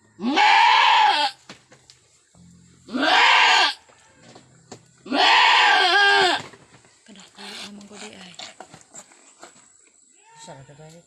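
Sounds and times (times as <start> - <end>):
goat bleating loudly: 0.2 - 1.4, 2.9 - 3.8, 5.0 - 6.4.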